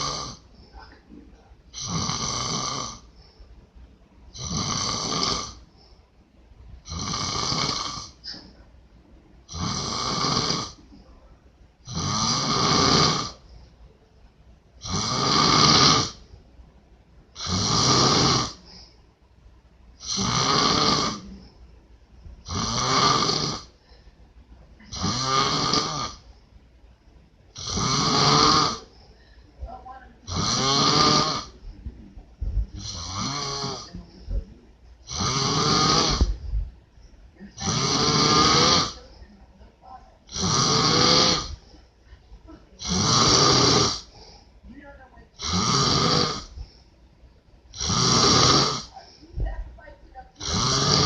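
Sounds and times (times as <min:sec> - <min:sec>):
man snoring loudly: 0:00.0 - 0:00.4, 0:01.8 - 0:03.1, 0:04.4 - 0:05.6, 0:06.9 - 0:08.2, 0:09.5 - 0:10.8, 0:11.9 - 0:13.4, 0:14.8 - 0:16.2, 0:17.4 - 0:18.6, 0:20.0 - 0:21.3, 0:22.5 - 0:23.7, 0:24.9 - 0:26.2, 0:27.6 - 0:28.8, 0:30.3 - 0:31.6, 0:32.8 - 0:33.9, 0:35.1 - 0:36.3, 0:37.6 - 0:39.0, 0:40.3 - 0:41.6, 0:42.8 - 0:44.1, 0:45.4 - 0:46.5, 0:47.7 - 0:48.9, 0:50.4 - 0:51.0.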